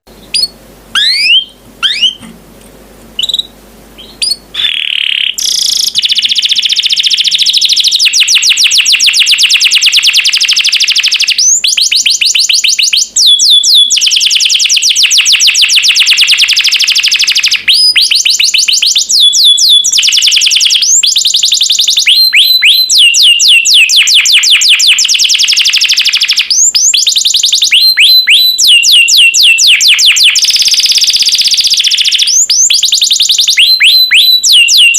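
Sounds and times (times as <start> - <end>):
canary singing: 0.1 - 2.3, 3.1 - 34.9.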